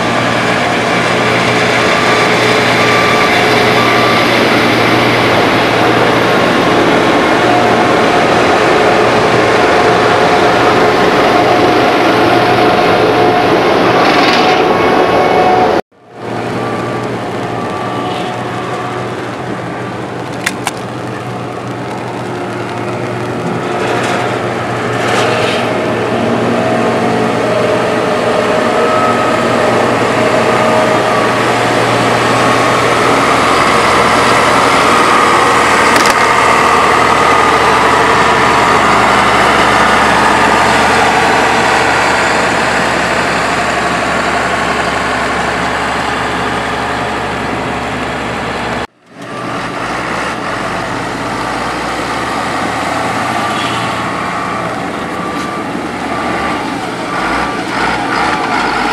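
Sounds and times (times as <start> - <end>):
heavy diesel engines running: 0.0 - 58.9.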